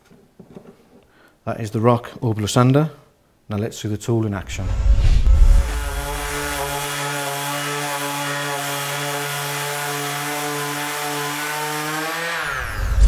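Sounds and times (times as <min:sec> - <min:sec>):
orbital sander motor humming: 0:05.2 - 0:07.4.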